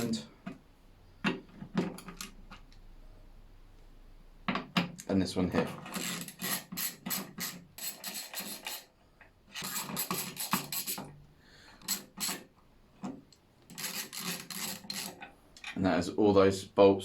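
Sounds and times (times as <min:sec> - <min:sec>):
hand tool unscrewing bolts: 0:05.5 - 0:08.9, 0:09.5 - 0:11.2, 0:11.8 - 0:15.8.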